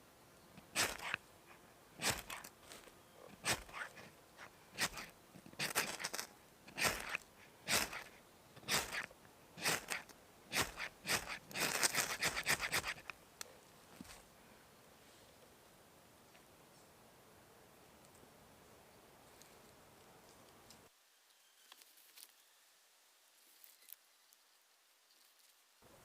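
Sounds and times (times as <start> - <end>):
crunching scrapes: 0.6 - 1.2, 2.0 - 13.1.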